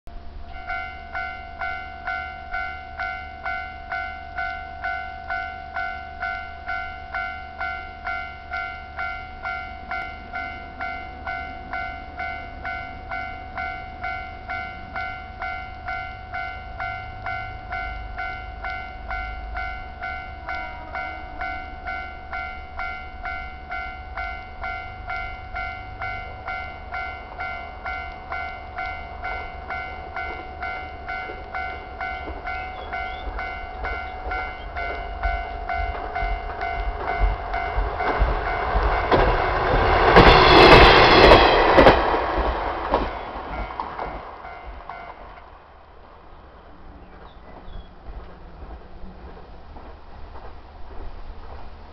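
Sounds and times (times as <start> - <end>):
level crossing bell ringing: 0.6 - 37.8.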